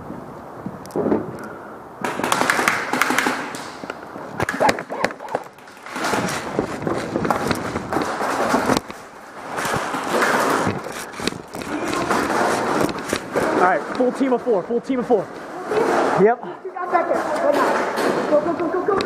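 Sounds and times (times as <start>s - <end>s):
gear handling clicks and knocks: 2.4s - 14.1s
hurried footsteps on hard floor: 4.8s - 13.6s.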